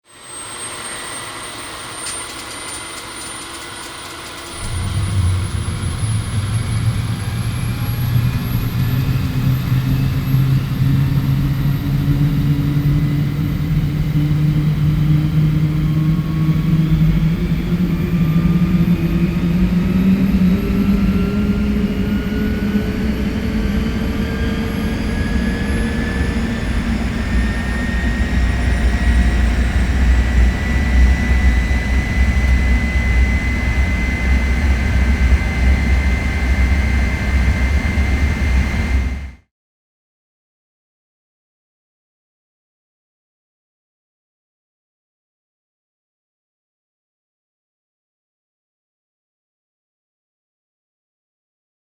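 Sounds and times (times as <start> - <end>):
jet engines whining and rumbling: 0.1 - 39.4.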